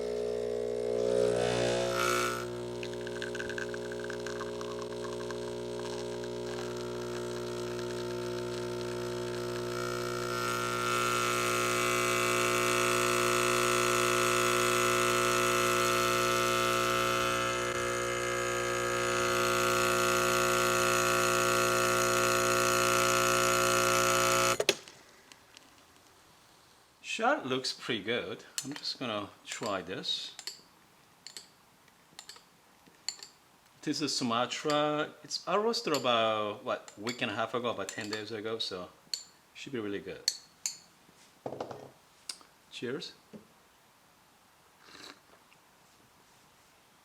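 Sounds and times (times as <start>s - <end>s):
espresso machine hiss: 0.0s - 24.6s
espresso machine pump humming: 0.0s - 24.6s.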